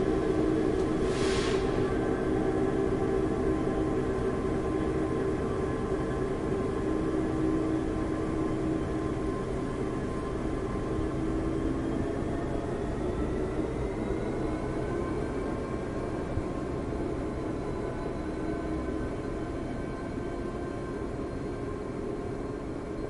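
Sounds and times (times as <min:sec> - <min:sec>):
diesel locomotive engine rumbling: 0:00.0 - 0:23.0.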